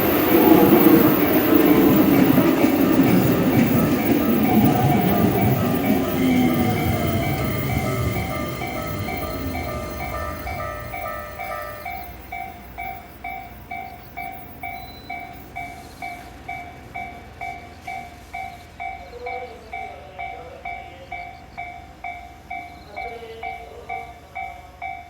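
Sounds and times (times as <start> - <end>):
level crossing bell ringing: 0.0 - 15.8
train rumbling: 0.0 - 25.0.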